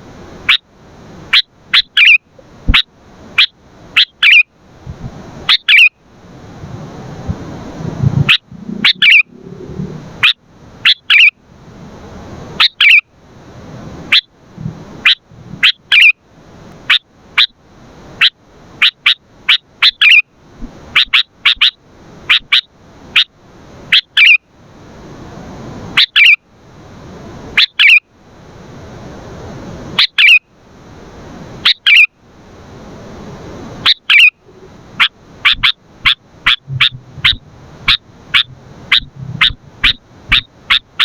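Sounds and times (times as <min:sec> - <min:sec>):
bird calling sharp notes: 0:01.3 - 0:04.5, 0:05.5 - 0:05.9, 0:08.3 - 0:11.4, 0:12.6 - 0:13.1, 0:15.0 - 0:16.2, 0:23.9 - 0:24.4, 0:26.0 - 0:26.4, 0:27.6 - 0:28.0, 0:30.0 - 0:30.4, 0:31.7 - 0:32.1, 0:33.8 - 0:41.0.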